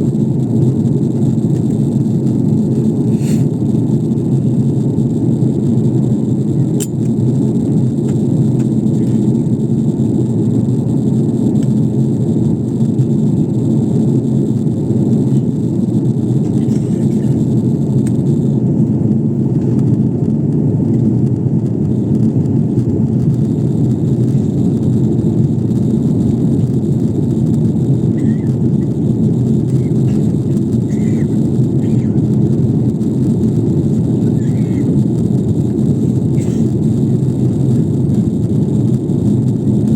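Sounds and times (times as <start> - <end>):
airliner cabin roar: 0.0 - 39.9.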